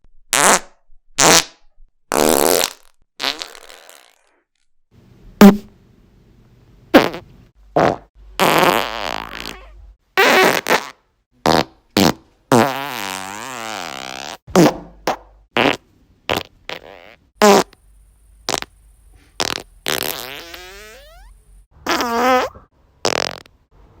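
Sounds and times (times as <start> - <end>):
farts: 0.3 - 1.5, 2.1 - 4.3, 7.0 - 17.8, 18.5 - 18.7, 19.3 - 23.5.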